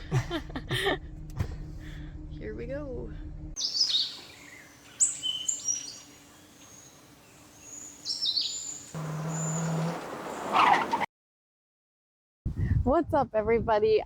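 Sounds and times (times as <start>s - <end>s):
birds chirping: 3.6s - 11.1s.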